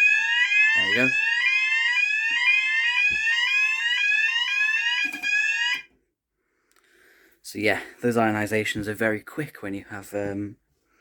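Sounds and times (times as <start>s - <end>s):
fire alarm rising sweep tone: 0.0s - 5.9s.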